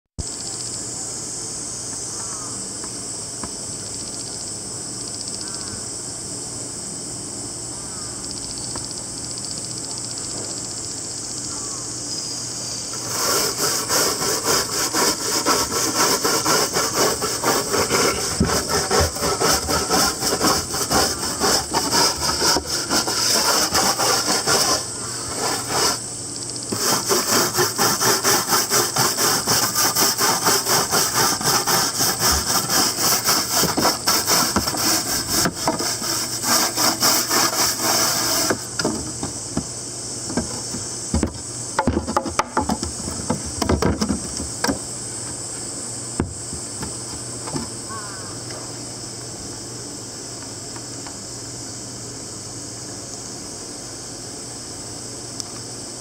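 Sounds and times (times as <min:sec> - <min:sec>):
high insect buzz: 0:00.2 - 0:56.0
stiff brush scrubbing wood: 0:12.9 - 0:26.1, 0:26.7 - 0:39.2.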